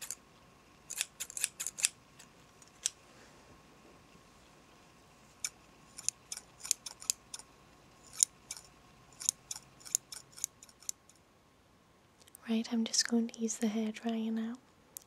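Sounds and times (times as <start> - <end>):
scissors snipping hair: 0.9 - 2.0, 5.4 - 7.4, 8.1 - 11.0.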